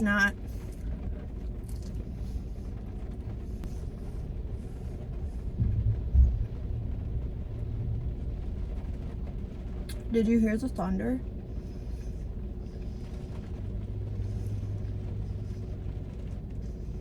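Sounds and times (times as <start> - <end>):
thunder rumbling: 0.0 - 9.9
rain on a car: 0.0 - 17.0.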